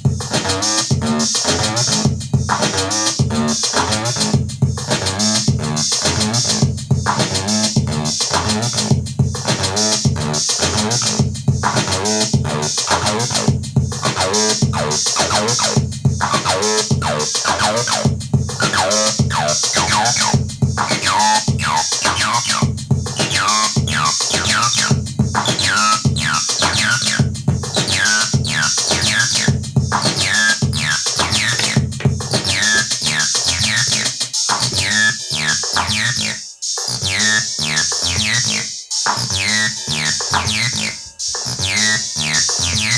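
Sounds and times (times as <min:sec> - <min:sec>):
drum machine beat: 0:00.0 - 0:42.9
sequenced synth bassline: 0:14.2 - 0:22.6, 0:23.4 - 0:24.9, 0:39.2 - 0:42.9.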